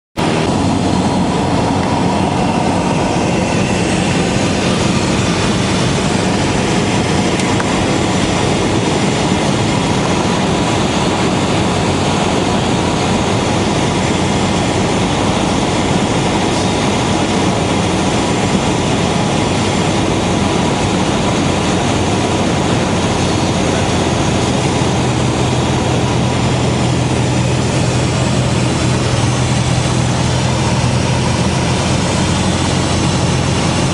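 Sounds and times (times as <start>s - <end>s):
airplane engine and propeller: 0.2s - 33.9s
low hum: 0.2s - 33.9s
rush of airflow: 0.2s - 33.9s.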